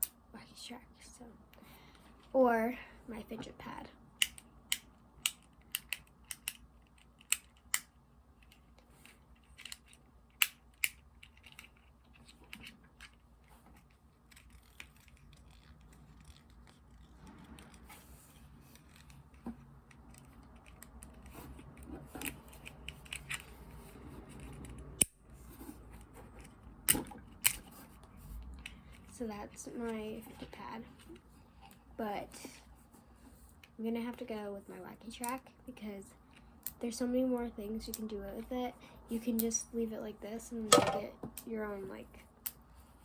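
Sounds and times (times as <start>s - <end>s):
plastic fidget toys clicking: 4.2s - 13.2s, 18.7s - 23.7s
plastic rubbing: 11.2s - 31.3s.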